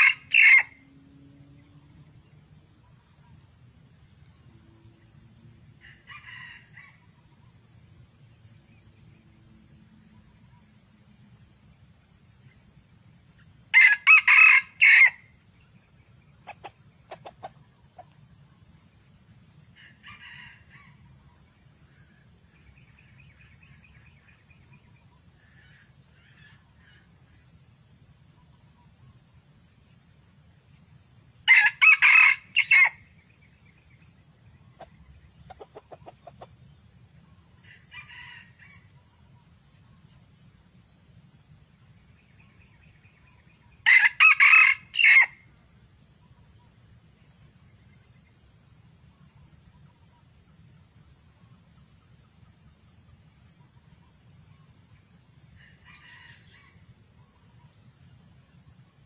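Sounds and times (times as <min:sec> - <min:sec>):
junglefowl crowing: 0:00.0 - 0:00.8, 0:05.8 - 0:07.0, 0:13.8 - 0:15.2, 0:19.8 - 0:21.0, 0:31.5 - 0:33.0, 0:37.7 - 0:38.8, 0:43.9 - 0:45.4, 0:55.6 - 0:56.8.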